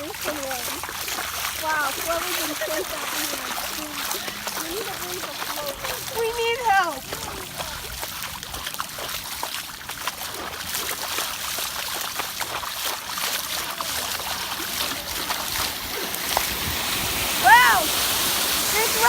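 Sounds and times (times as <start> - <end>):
heavy rain falling: 0.0 - 8.4, 13.0 - 19.0
water splashing: 0.0 - 19.0.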